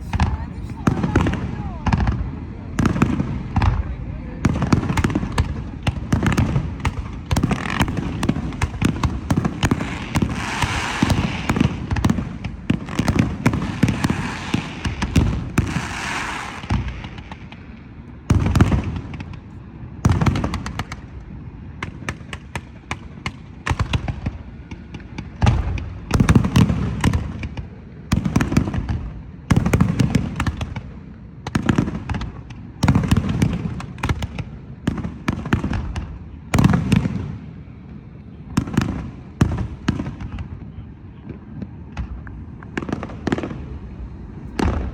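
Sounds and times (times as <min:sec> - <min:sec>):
fireworks crackling: 0:00.0 - 0:05.6, 0:06.2 - 0:17.8
firework booms: 0:00.0 - 0:17.6, 0:18.3 - 0:19.4, 0:20.0 - 0:21.1, 0:21.8 - 0:37.5, 0:38.6 - 0:40.6, 0:41.2 - 0:44.9.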